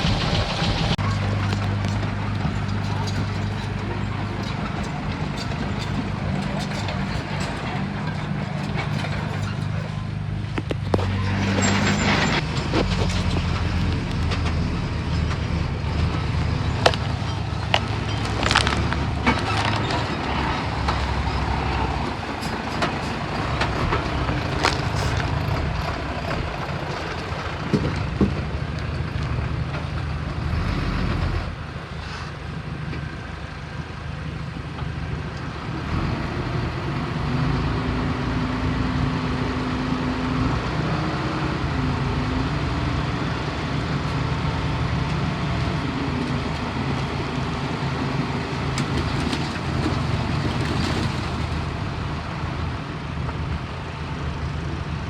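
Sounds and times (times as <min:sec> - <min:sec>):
metallic knocks and clanks: 0:00.0 - 0:26.5
heavy machinery diesel engine: 0:00.0 - 0:55.0.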